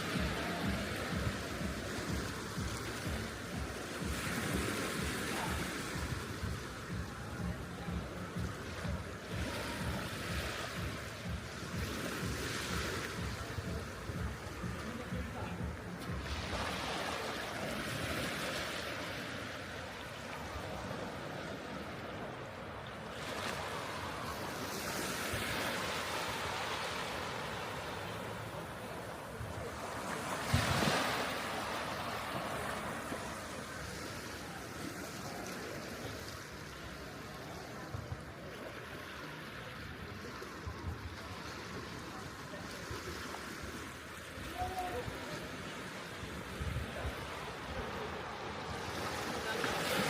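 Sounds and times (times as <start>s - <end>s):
sea waves breaking on shore: 0.0s - 50.0s.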